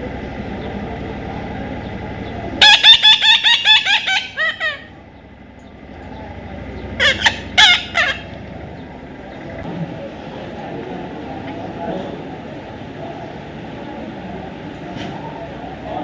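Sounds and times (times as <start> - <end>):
parrot squawking: 2.6 - 5.0, 6.9 - 8.4.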